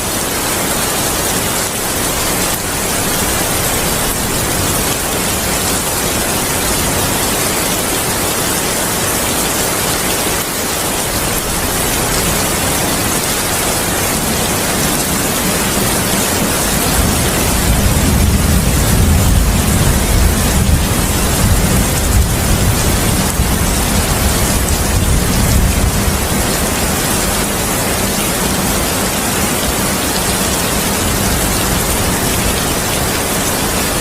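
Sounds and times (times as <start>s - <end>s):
heavy rain hissing: 0.0s - 34.0s
thunder rumbling: 13.8s - 29.0s.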